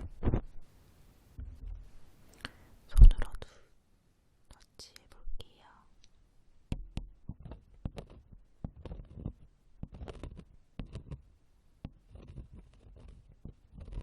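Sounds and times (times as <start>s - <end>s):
ear pick scraping and tapping: 0.0s - 0.7s, 6.7s - 14.0s.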